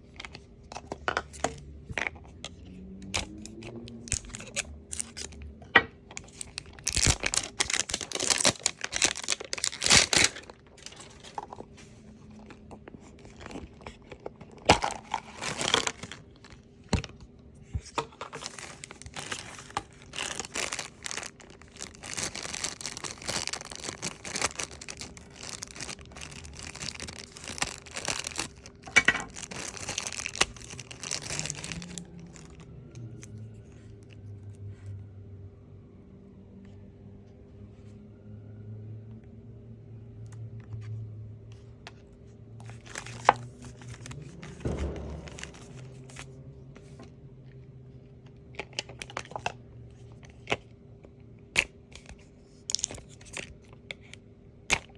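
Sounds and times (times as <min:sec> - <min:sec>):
packaging crinkling and tearing: 0:02.9 - 0:05.5, 0:06.1 - 0:34.2, 0:42.6 - 0:47.1, 0:48.5 - 0:50.6, 0:51.6 - 0:54.0.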